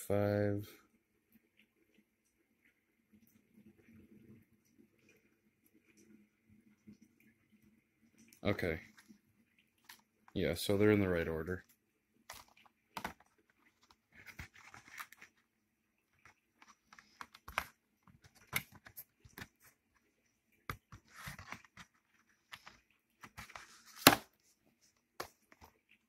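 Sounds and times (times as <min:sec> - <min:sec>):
plastic cases clicking: 0:12.3 - 0:15.2
packaging rustling: 0:12.3 - 0:15.5.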